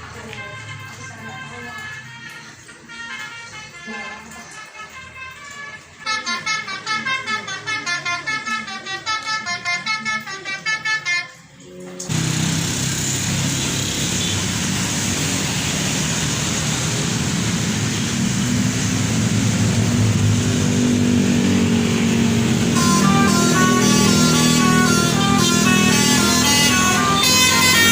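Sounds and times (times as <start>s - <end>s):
multi-tone bus horn: 0.5s - 11.5s, 13.5s - 14.5s, 22.2s - 27.9s
loud rumbling noise with hum: 12.1s - 27.2s.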